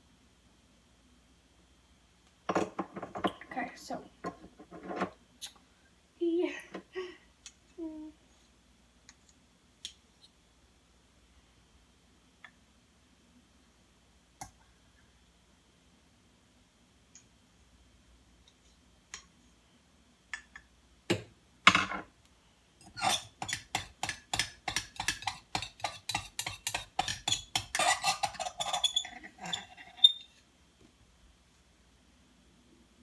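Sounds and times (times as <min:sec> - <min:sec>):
spoon clinking in a dish: 0:22.8 - 0:29.2.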